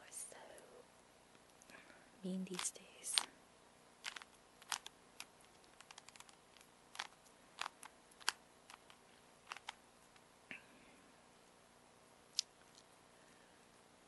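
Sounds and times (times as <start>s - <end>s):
plastic puzzle cube twisting clicks: 4.0s - 9.8s.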